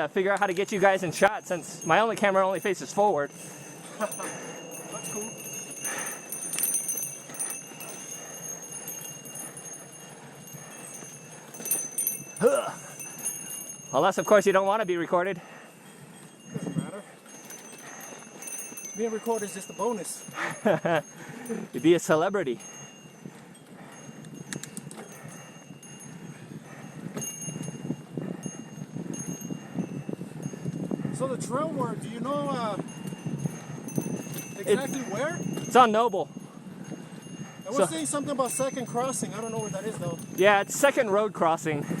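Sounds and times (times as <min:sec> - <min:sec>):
steady high-pitched ringing: 0:00.0 - 0:41.8
bike rattling and clicking: 0:00.0 - 0:42.0.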